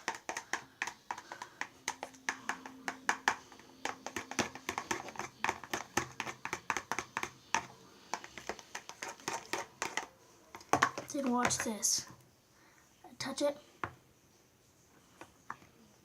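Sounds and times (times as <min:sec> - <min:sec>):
thick liquid being stirred: 0:00.0 - 0:12.0.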